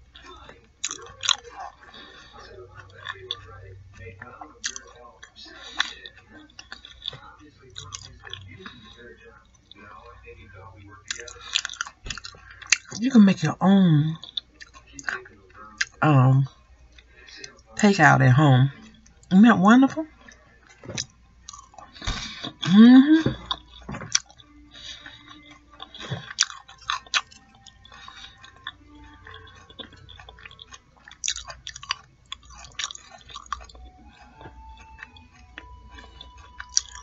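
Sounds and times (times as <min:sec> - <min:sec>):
chewing and crunching food: 0:00.0 - 0:37.0
person humming mm: 0:22.0 - 0:23.5.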